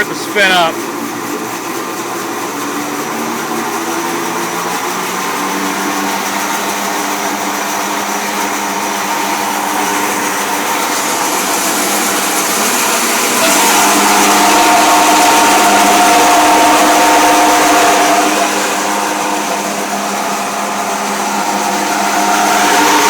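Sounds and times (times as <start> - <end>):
bandsaw motor humming: 0.0 - 23.0.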